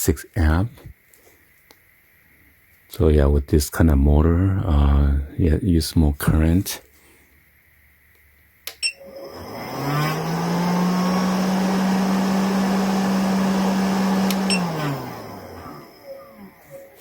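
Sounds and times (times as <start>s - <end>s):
switch clicks: 8.6s - 8.9s
electric motor whirring: 9.0s - 17.0s.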